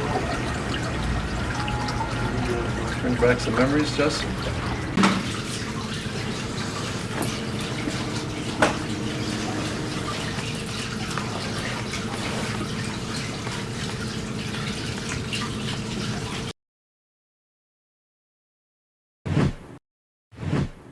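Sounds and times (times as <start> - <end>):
fountain water trickling: 0.0 - 16.5.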